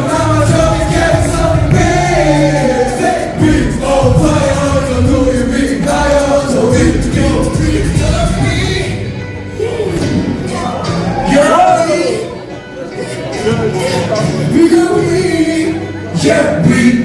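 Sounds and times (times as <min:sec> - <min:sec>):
loud beat: 0:00.0 - 0:09.0
men rapping and singing: 0:00.0 - 0:09.0, 0:13.7 - 0:17.0.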